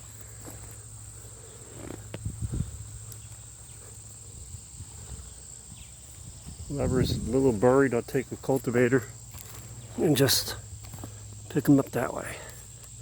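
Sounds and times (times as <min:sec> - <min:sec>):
crickets and insects buzzing: 0:00.0 - 0:13.0.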